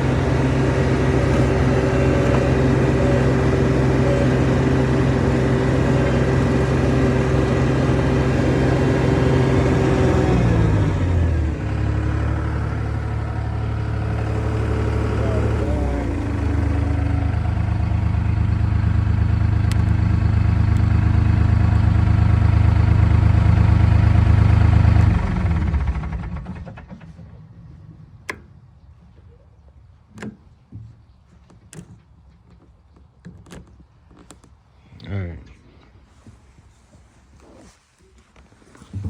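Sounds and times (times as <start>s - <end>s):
diesel engine running: 0.0s - 27.6s.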